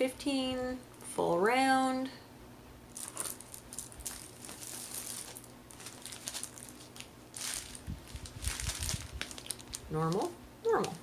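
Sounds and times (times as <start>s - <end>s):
plastic packaging crinkling: 2.9s - 11.0s.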